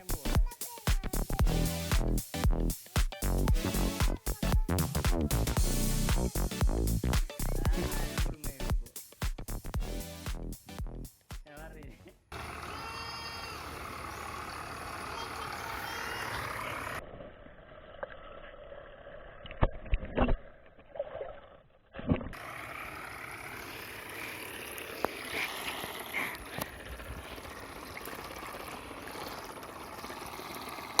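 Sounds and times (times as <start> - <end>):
water noise: 13.6 - 31.0.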